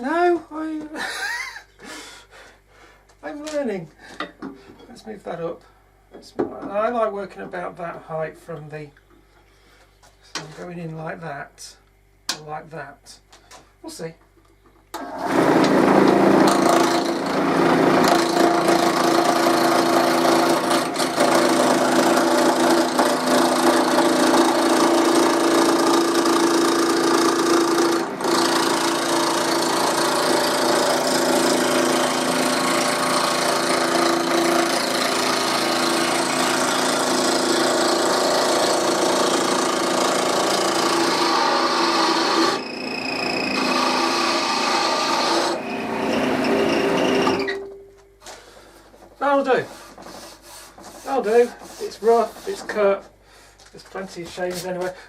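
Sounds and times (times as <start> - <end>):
wood lathe motor hum: 15.0 - 47.6
gouge scraping spinning wood: 15.2 - 47.6, 49.6 - 52.9.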